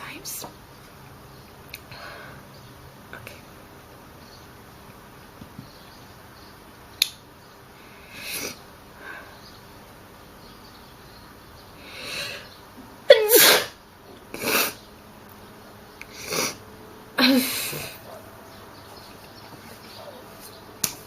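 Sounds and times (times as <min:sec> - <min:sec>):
person sneezing: 0:13.1 - 0:13.8.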